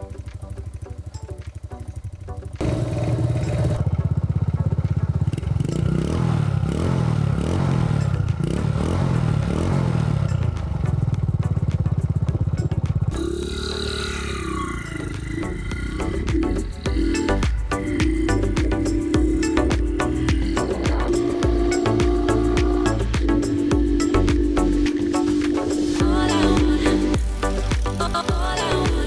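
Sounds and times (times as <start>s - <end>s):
motorcycle engine running: 0.0s - 29.0s
gliding tones: 12.5s - 29.0s.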